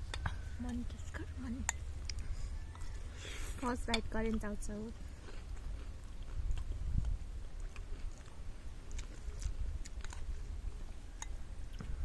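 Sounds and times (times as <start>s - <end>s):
low background rumble: 0.0s - 12.0s
person chewing noodles: 1.9s - 3.7s, 4.3s - 12.0s.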